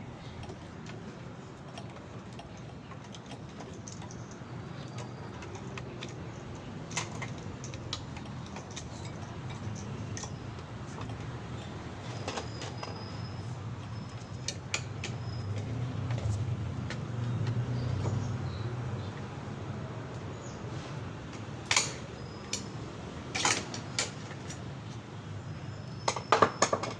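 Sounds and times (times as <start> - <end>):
clinks of small hard objects: 0.3 - 13.1.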